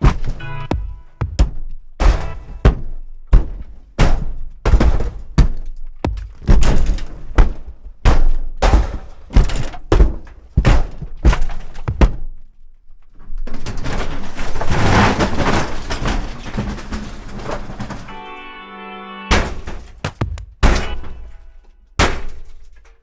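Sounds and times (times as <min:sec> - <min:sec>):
clattering crumbling crash: 0:00.0 - 0:12.3, 0:13.4 - 0:18.7, 0:19.3 - 0:23.0
heavy thunks on a shed: 0:00.0 - 0:13.6, 0:19.3 - 0:23.0.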